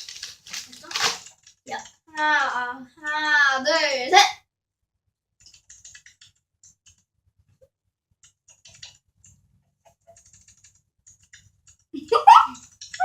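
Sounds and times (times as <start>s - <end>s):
crunching of snacks being chewed: 0.0s - 1.9s.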